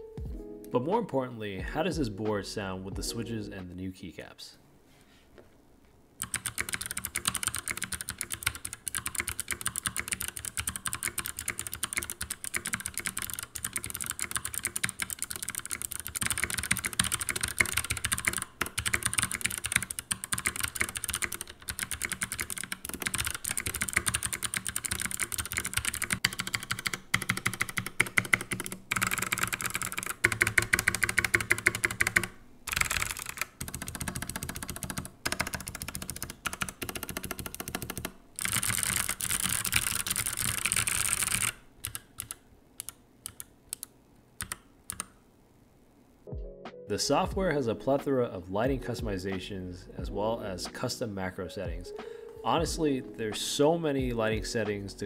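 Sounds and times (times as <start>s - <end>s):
clicky mechanical keyboard typing: 6.2s - 45.2s.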